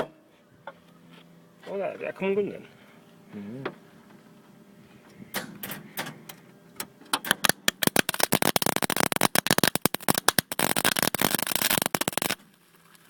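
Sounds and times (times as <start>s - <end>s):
welding arc crackling and spitting: 7.3s - 12.4s.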